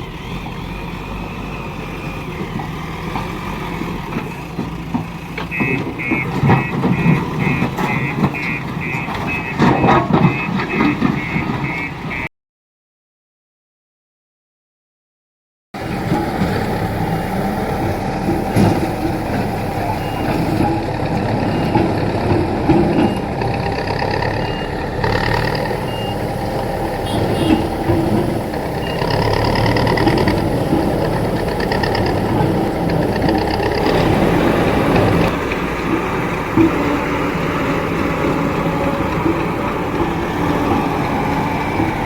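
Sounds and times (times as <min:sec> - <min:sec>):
diesel engine running: 0:00.0 - 0:12.2, 0:15.8 - 0:42.0
reversing alarm beeping: 0:05.5 - 0:12.3, 0:16.5 - 0:35.3.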